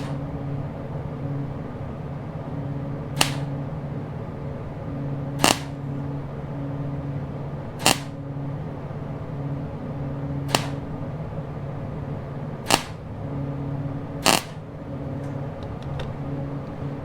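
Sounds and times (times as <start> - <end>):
welding machine hum: 0.0 - 17.0
tack weld crackle: 3.2 - 3.5, 5.4 - 5.8, 7.8 - 8.2, 10.5 - 10.9, 12.7 - 13.0, 14.2 - 14.6.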